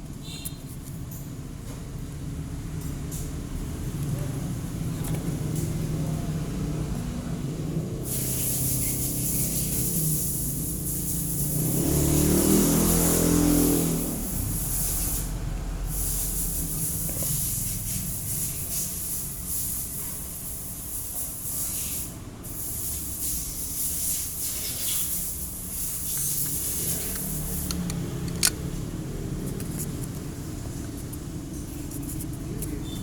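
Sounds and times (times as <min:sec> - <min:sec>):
motor scooter engine: 0:01.6 - 0:19.4, 0:23.8 - 0:33.0
wind and road noise: 0:25.8 - 0:33.0
sharp click: 0:26.3 - 0:28.7.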